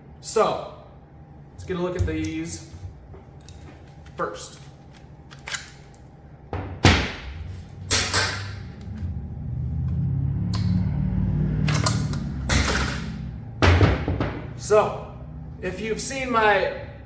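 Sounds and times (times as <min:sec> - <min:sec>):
tomahawks striking a target: 0:06.7 - 0:08.7.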